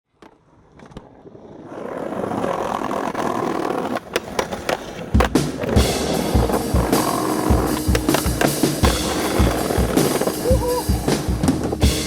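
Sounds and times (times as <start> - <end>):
skateboard wheels rolling on pavement: 0.1 - 12.0
music with heavy drum thumps: 5.0 - 12.0.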